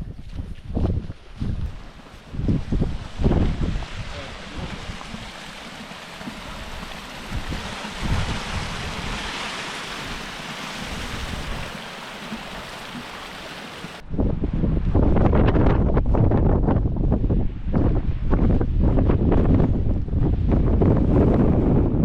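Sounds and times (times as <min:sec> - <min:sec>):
wind buffeting microphone: 0:00.0 - 0:22.0
stream rushing: 0:01.8 - 0:14.0.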